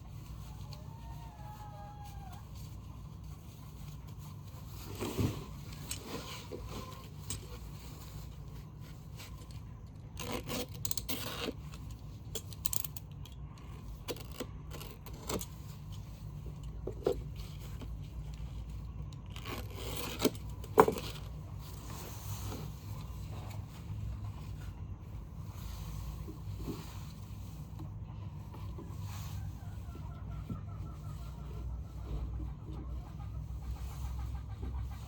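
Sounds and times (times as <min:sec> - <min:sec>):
steady low rumble: 0:20.2 - 0:35.0.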